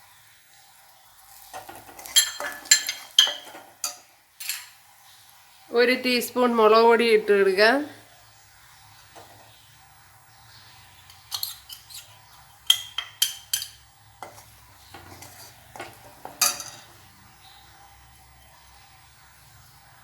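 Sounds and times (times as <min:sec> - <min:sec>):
spoon clinking against pan: 0:01.6 - 0:04.7, 0:11.1 - 0:14.4, 0:15.8 - 0:16.9.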